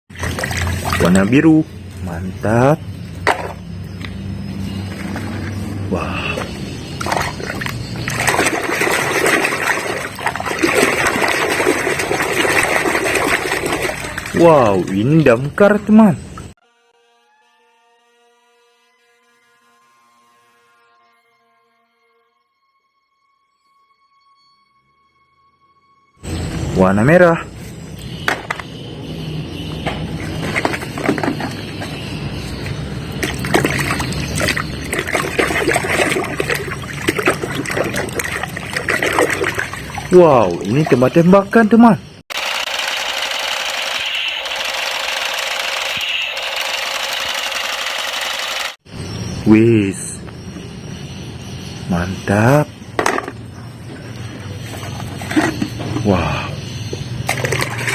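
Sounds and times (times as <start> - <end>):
water splashing and sloshing: 0.1 - 2.0, 6.3 - 15.6, 29.6 - 41.2, 53.0 - 56.2, 56.8 - 57.9.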